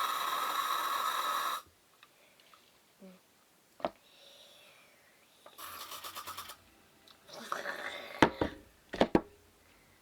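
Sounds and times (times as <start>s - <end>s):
spray can hissing: 5.6s - 6.6s.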